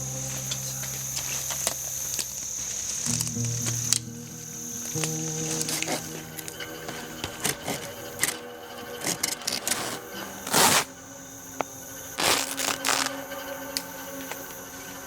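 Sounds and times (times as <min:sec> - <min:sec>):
faint steady tones: 0:00.0 - 0:15.0
rustling and crunching: 0:09.5 - 0:11.0, 0:12.2 - 0:13.2.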